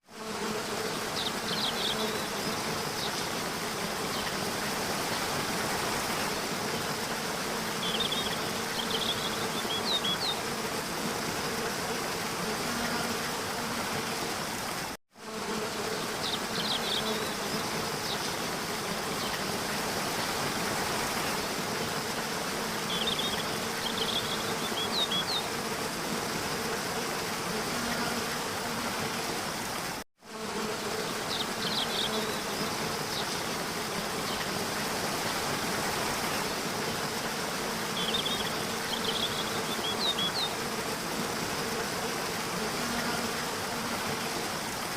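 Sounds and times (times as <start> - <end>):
rushing water: 0.1 - 15.0, 16.0 - 30.0, 31.1 - 44.9.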